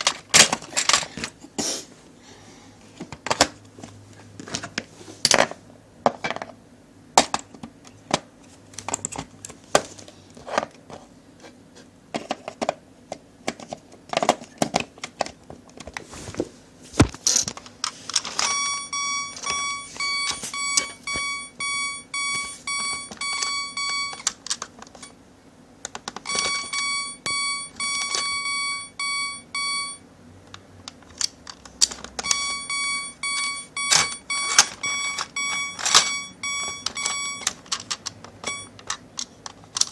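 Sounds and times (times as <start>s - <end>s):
plastic toy parts rattling: 0.0s - 1.3s, 17.2s - 18.6s, 33.9s - 39.9s
toy electronic warning beeps: 18.4s - 24.3s, 26.2s - 30.0s, 32.2s - 37.6s, 38.4s - 38.8s.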